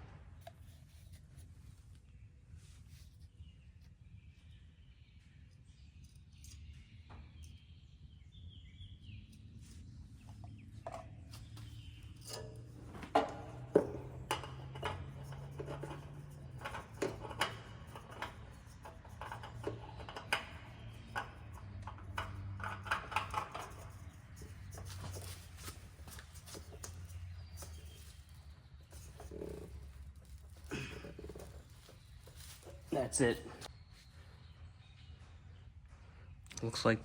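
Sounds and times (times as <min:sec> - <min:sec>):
metal clinks and knocks: 0:10.2 - 0:33.7.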